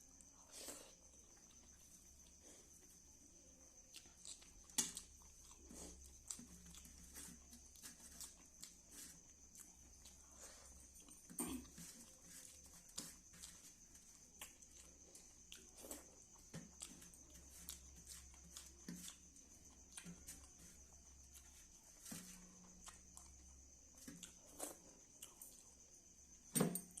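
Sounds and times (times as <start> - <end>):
person chewing: 3.7 - 25.8.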